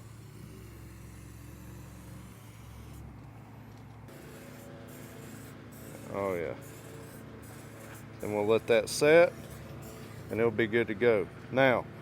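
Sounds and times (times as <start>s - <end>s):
faint low motor hum: 0.0s - 12.0s.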